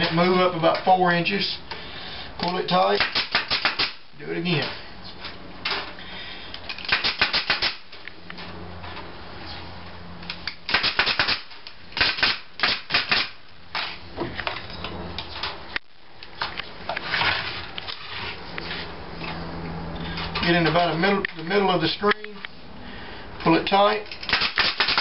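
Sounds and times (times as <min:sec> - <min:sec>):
nailer firing sharp clacks: 0:02.9 - 0:04.0, 0:06.8 - 0:07.9, 0:10.6 - 0:14.0, 0:24.2 - 0:25.0.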